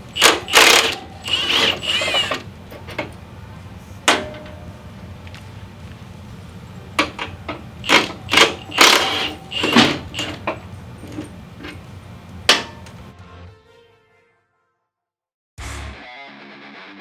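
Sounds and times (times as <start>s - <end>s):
hand tools clanking on metal: 0.0s - 3.3s, 4.0s - 4.8s, 6.8s - 13.1s
metal rattling: 0.0s - 3.3s, 7.0s - 13.1s.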